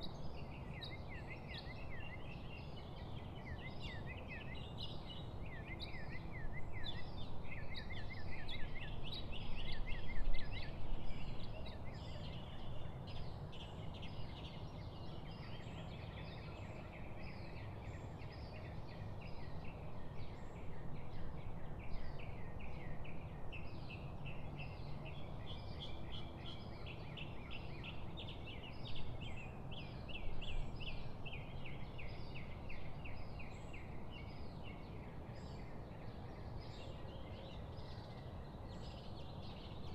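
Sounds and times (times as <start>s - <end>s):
songbirds singing: 0.0s - 39.9s.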